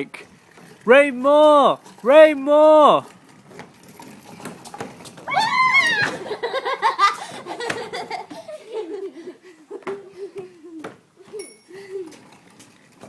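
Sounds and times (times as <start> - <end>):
high voice squealing and laughing: 5.3 - 6.4.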